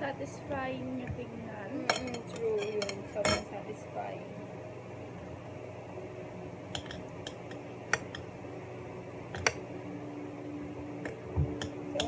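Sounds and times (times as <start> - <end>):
faint steady hum: 0.0 - 12.0
utensils clinking on dishware: 1.8 - 3.5.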